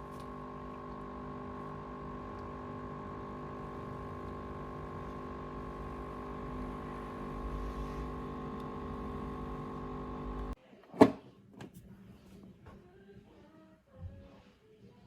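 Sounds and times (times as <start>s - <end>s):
espresso machine humming: 0.0s - 10.6s.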